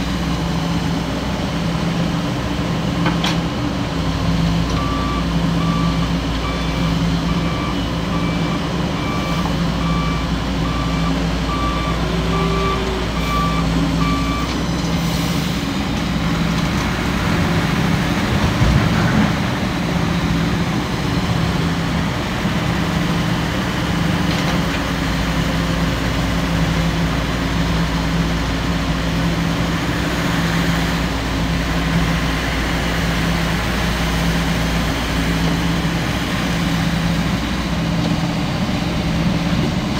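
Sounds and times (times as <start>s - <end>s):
heavy diesel engine running: 0.0s - 39.9s
reversing alarm beeping: 4.7s - 14.6s.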